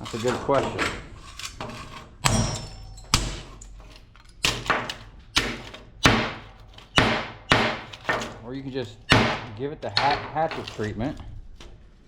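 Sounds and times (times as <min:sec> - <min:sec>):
metallic ring: 0:02.2 - 0:03.2
heavy blows on metal housing: 0:04.6 - 0:08.3, 0:09.1 - 0:10.4.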